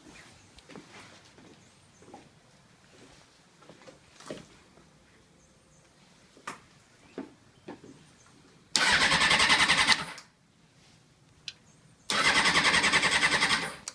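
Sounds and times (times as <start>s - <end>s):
starter motor cranking engine: 8.8s - 10.3s, 12.1s - 13.9s.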